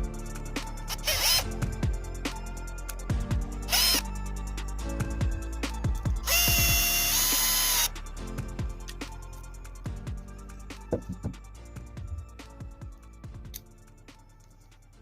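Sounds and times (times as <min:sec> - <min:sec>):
background music with steady beat: 0:00.0 - 0:15.0
electric drill whirring: 0:00.9 - 0:01.5, 0:03.7 - 0:04.0, 0:06.2 - 0:08.0.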